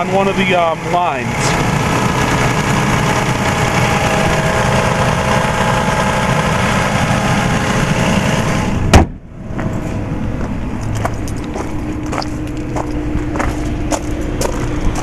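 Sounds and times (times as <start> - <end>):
car engine idling: 0.0 - 15.0
car hood slamming shut: 8.9 - 9.2.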